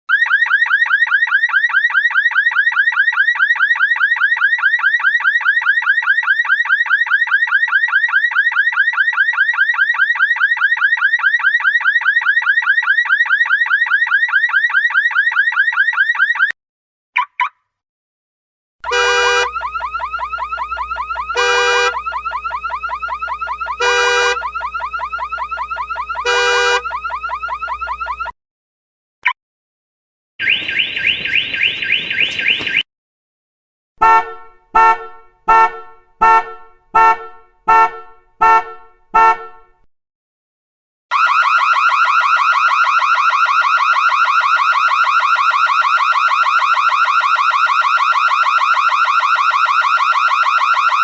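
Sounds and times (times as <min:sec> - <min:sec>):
car alarm warbling: 0:18.8 - 0:28.4, 0:30.4 - 0:32.8, 0:41.1 - 0:51.0
alarm chirp: 0:30.4 - 0:32.8.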